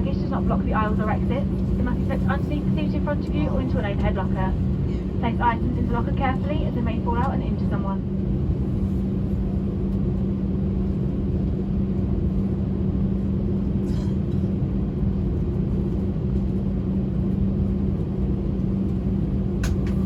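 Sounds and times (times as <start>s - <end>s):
aircraft cabin rumble and hum: 0.0s - 20.0s.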